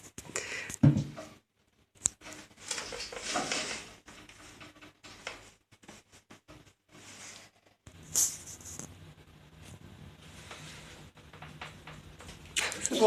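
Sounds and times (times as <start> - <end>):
scraping and rustling: 2.2 - 9.0, 9.6 - 13.0.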